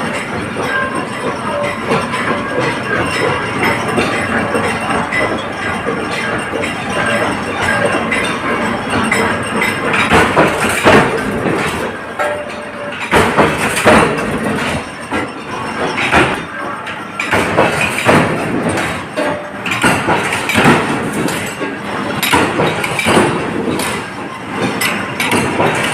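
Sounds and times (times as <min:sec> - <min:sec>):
cutting machine clatter: 0:00.0 - 0:25.9.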